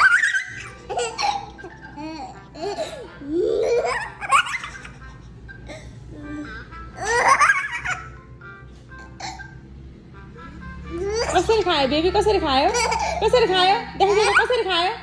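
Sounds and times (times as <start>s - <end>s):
baby squealing with laughter: 0.0s - 5.0s
baby laughing: 0.0s - 8.2s, 11.0s - 11.7s, 12.6s - 14.7s.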